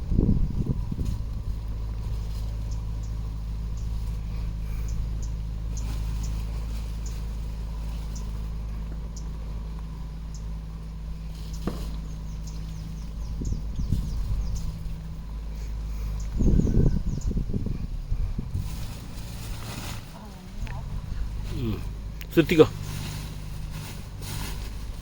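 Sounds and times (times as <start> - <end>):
low mechanical hum: 0.0 - 25.0.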